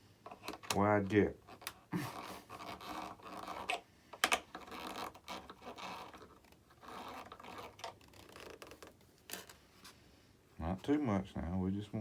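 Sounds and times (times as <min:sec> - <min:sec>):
scratching and rubbing foam: 0:04.6 - 0:09.0.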